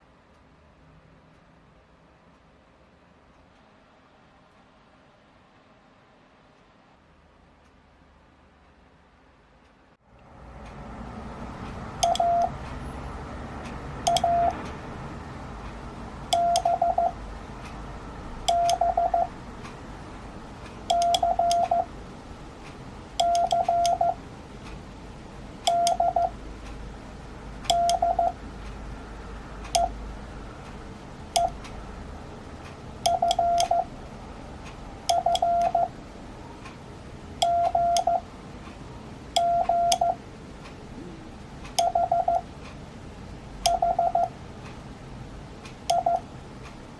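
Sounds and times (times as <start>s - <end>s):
sharp clicks: 11.6s - 12.8s, 13.6s - 14.8s, 18.4s - 19.8s, 20.6s - 21.8s, 22.6s - 24.9s, 27.6s - 28.8s, 29.6s - 30.0s, 30.6s - 31.8s, 32.6s - 33.8s, 39.4s - 40.9s
morse code beeps: 12.0s - 12.5s, 14.1s - 14.6s, 16.3s - 17.2s, 18.5s - 19.3s, 20.9s - 21.9s, 23.2s - 24.2s, 25.7s - 26.4s, 27.7s - 28.4s, 31.4s - 31.6s, 33.1s - 33.9s, 35.1s - 35.9s, 37.4s - 38.2s, 39.4s - 40.2s, 41.8s - 42.4s, 43.7s - 44.3s, 45.9s - 46.2s.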